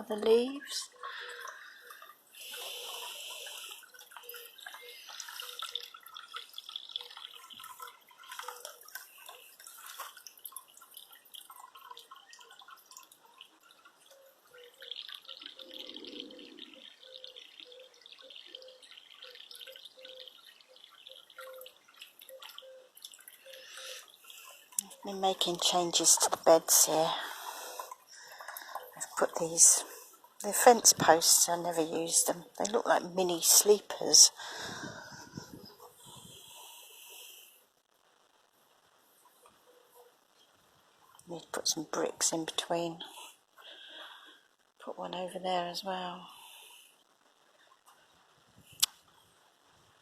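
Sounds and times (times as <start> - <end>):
water dripping from leaves: 0.0 - 37.4, 47.6 - 49.6.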